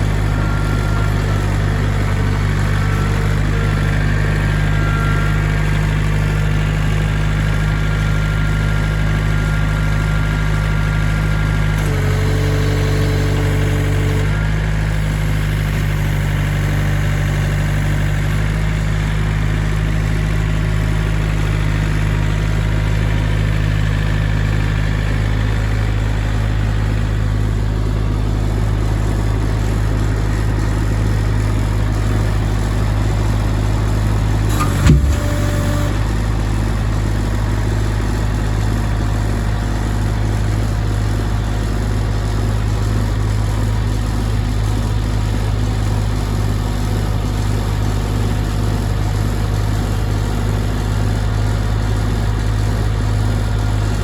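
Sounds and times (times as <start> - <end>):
engine running steadily: 0.0 - 54.0
brief knock: 34.5 - 35.5.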